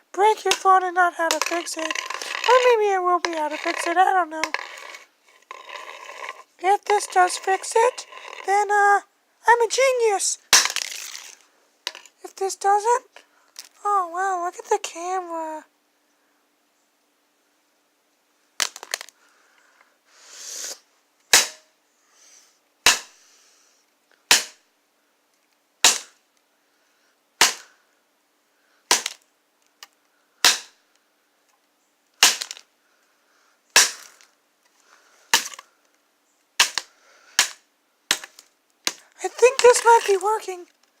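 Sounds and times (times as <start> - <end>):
short hiss: 20.1 - 20.9.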